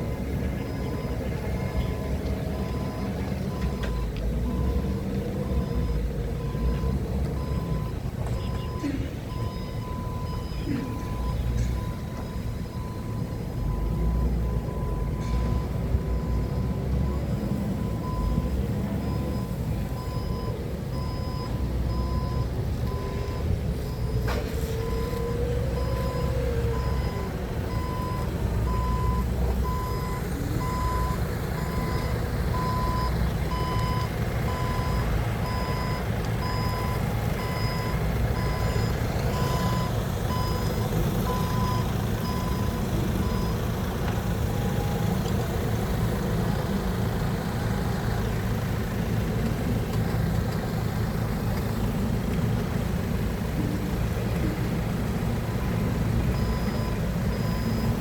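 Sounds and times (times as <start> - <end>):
reversing alarm beeping: 0.0 - 43.7, 55.5 - 58.0
forklift engine running: 0.0 - 58.0.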